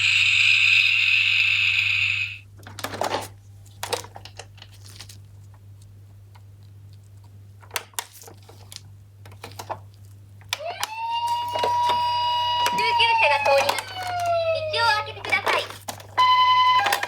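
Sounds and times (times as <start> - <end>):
toy electronic siren: 0.0 - 2.4, 10.6 - 15.1, 16.2 - 17.0
plastic toy cars clicking and rattling: 12.7 - 16.2.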